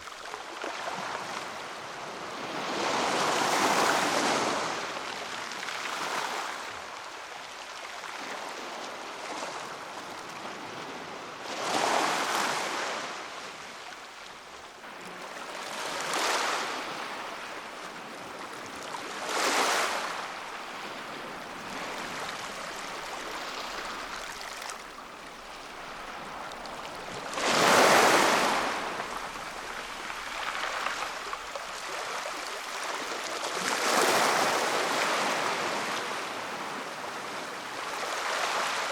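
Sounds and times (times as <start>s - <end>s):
waves breaking on shore: 0.0s - 38.9s
hiss of surf: 19.5s - 38.9s.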